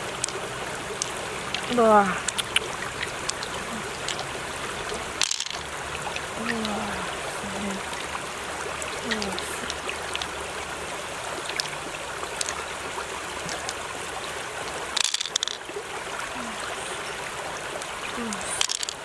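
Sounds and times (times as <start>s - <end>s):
small hard clicks: 0.0s - 6.8s, 9.0s - 10.4s, 11.4s - 12.6s, 13.4s - 13.9s, 15.0s - 15.6s, 17.8s - 19.0s
running water: 0.0s - 19.0s.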